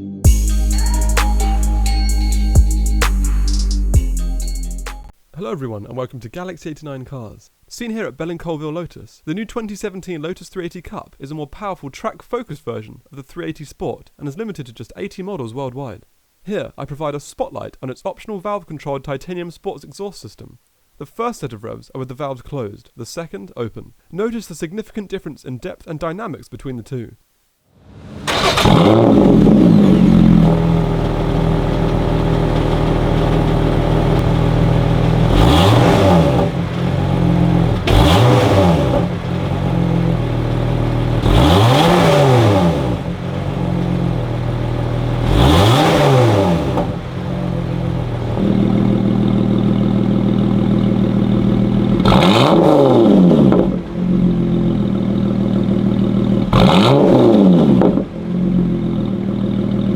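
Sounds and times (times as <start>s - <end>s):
car engine idling and revving: 0.3s - 5.0s, 27.8s - 59.9s.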